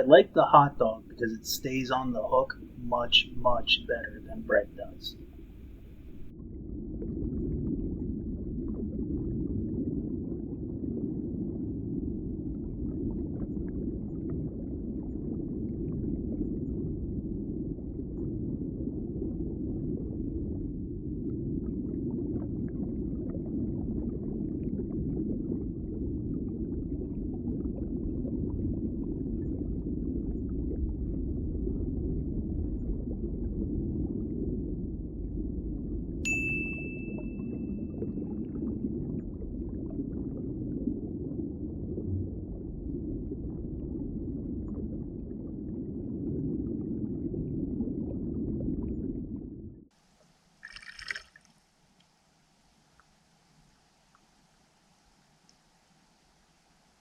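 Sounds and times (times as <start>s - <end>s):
underwater wash of water: 50.6s - 51.6s.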